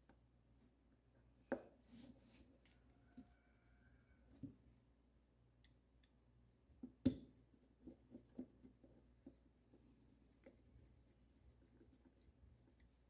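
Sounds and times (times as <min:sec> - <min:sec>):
light clicks and taps of tools: 0:05.6 - 0:06.2.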